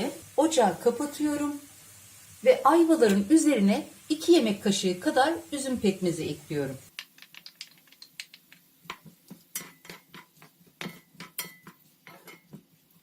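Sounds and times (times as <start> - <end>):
spoon scraping a frying pan: 8.8 - 13.0.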